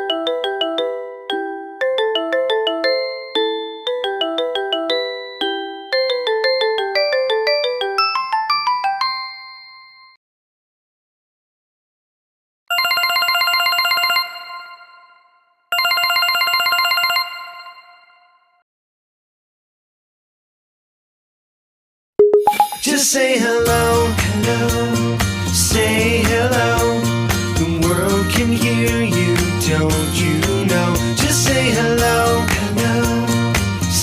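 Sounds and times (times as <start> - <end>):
bell-like ringtone melody: 0.0 - 10.2, 12.7 - 18.6, 22.2 - 23.0.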